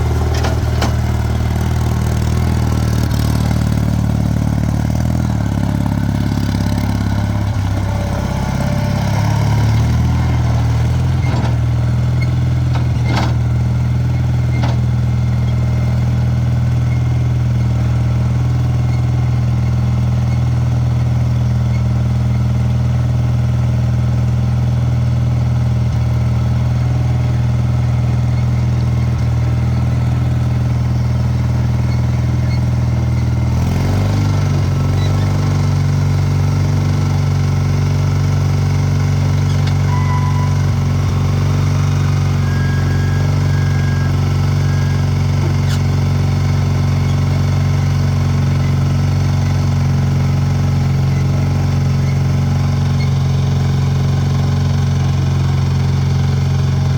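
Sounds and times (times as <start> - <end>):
skid steer engine running: 0.0 - 56.9.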